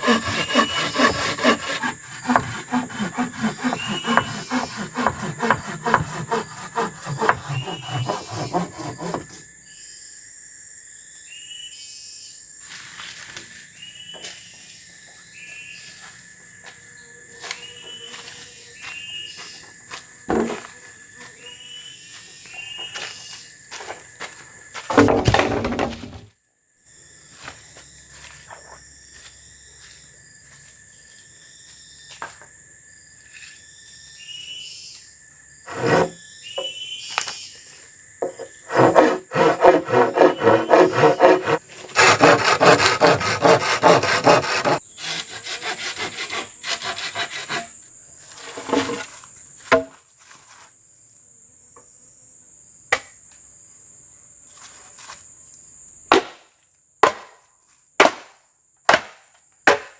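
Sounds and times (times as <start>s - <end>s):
hand saw sawing wood: 0.0s - 9.4s, 35.7s - 36.2s, 38.3s - 47.8s
insect drone: 0.0s - 59.9s.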